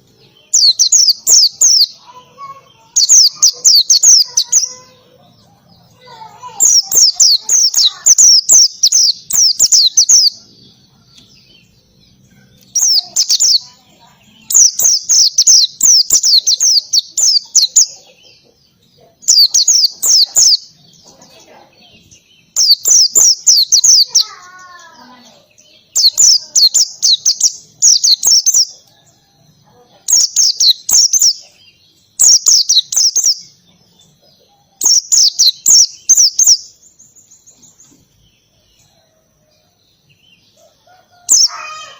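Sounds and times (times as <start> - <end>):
bird singing fast sharp notes: 0.0 - 5.0, 6.0 - 18.1, 19.2 - 21.0, 22.1 - 28.8, 30.1 - 33.6, 34.8 - 37.7.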